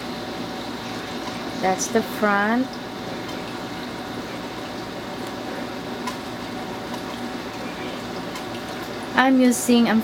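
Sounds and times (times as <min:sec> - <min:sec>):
room hiss and hum: 0:00.0 - 0:10.0.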